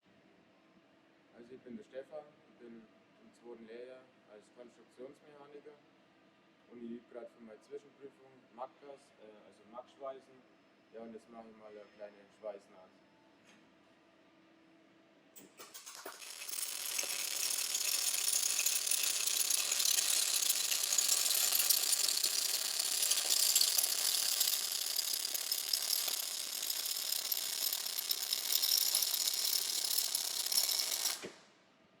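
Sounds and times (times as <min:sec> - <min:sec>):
welding arc crackling: 0:15.6 - 0:31.3.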